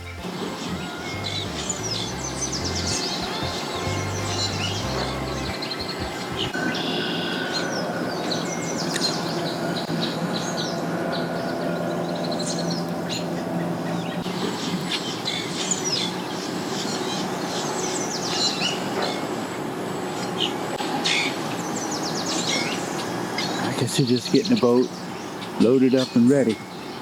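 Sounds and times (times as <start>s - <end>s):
low engine hum: 0.0s - 6.6s
birds chirping: 0.0s - 27.0s.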